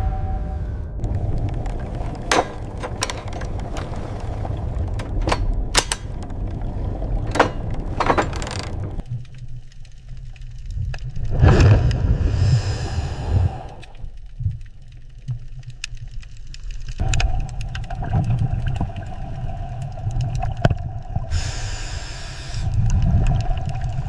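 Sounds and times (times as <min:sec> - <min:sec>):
low rumble: 0:00.0 - 0:14.6
sharp clicks and knocks: 0:01.0 - 0:09.4.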